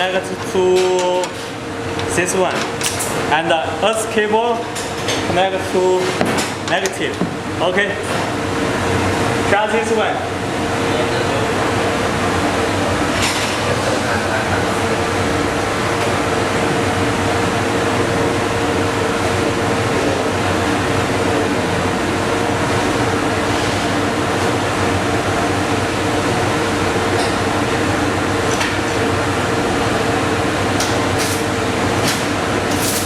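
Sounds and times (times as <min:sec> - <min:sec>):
welding arc crackling hiss: 0:30.9 - 0:33.0.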